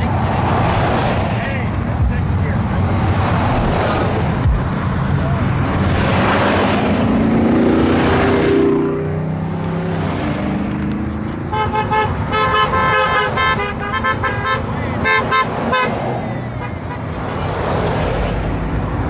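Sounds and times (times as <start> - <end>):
passing vehicle engines: 0.0 - 19.0
vehicle horns honking: 11.5 - 17.6.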